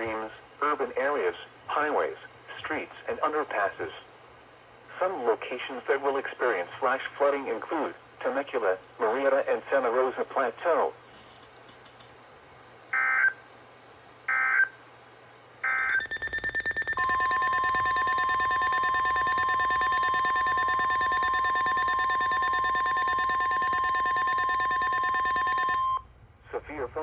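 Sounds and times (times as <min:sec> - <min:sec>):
pulsing alert alarm: 0:15.6 - 0:26.0
short data bursts: 0:15.6 - 0:26.0
steady alert tone: 0:15.6 - 0:26.0.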